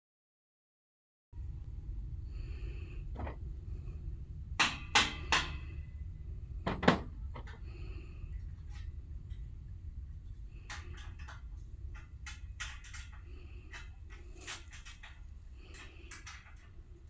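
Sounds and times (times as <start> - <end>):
low rumble: 1.4 - 17.0
tool striking wood: 4.6 - 5.6.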